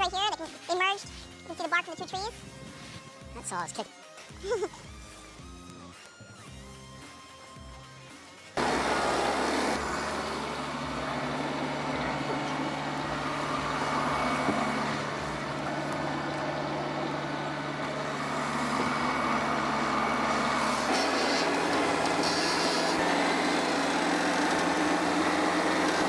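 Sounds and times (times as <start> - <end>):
chainsaw cutting log: 8.6 - 26.0.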